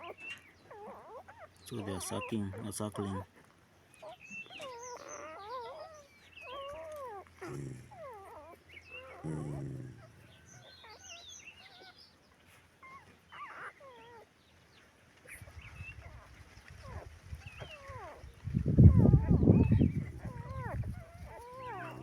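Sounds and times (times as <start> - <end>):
puppies squeaking and whimpering: 0.0 - 14.4, 15.2 - 22.0
low grunts: 7.4 - 8.1, 9.2 - 10.3.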